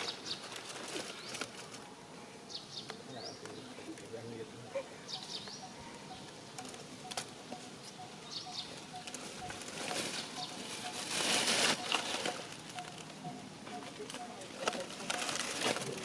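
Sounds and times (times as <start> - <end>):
rustling: 0.0 - 1.9, 8.6 - 16.0.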